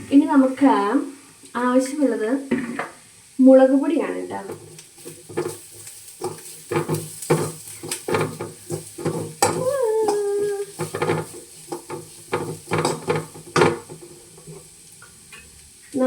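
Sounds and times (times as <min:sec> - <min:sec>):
onions sizzling in oil: 0:00.0 - 0:16.0
spoon stirring and scraping in a pan: 0:04.2 - 0:16.0.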